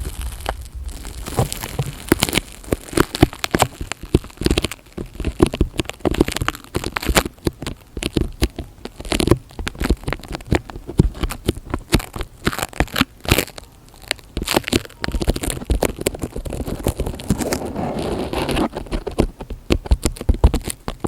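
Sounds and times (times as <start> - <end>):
crackles clicks and taps on microphone: 18.8 - 21.0.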